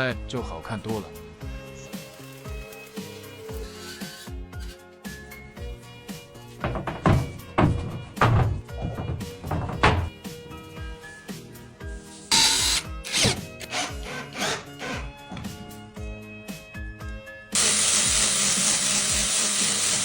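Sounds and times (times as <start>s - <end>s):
background music: 0.0s - 20.0s
power tool working wood: 12.1s - 15.1s, 17.6s - 20.0s.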